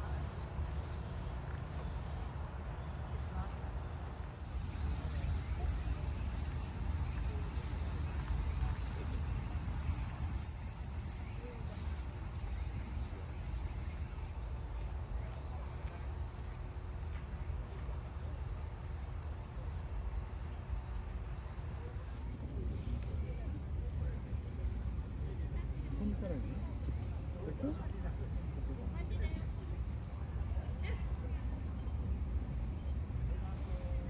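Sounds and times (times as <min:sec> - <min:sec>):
insects chirping: 0:00.0 - 0:34.0.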